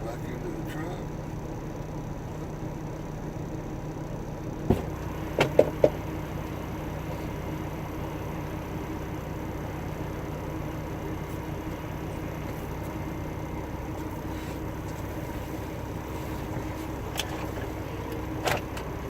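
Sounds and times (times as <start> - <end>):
diesel engine idling: 0.0 - 19.0
knocks: 4.7 - 6.0.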